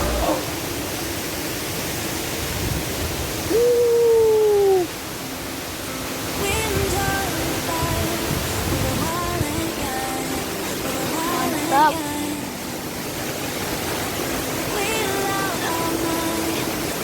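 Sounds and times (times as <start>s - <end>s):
short pitched notes: 0.0s - 0.6s
waterfall rushing: 0.0s - 17.0s.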